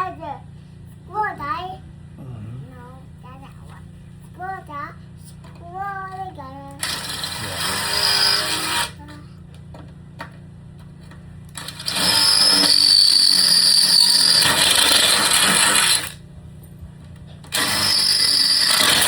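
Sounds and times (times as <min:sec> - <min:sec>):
small electric motor running: 0:06.8 - 0:09.2, 0:11.5 - 0:16.3, 0:17.5 - 0:19.0.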